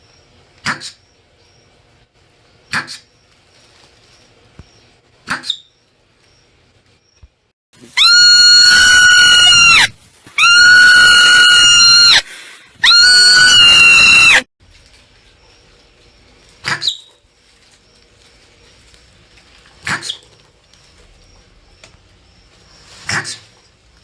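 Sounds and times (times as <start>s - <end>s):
marmot screaming calls: 7.9s - 14.4s.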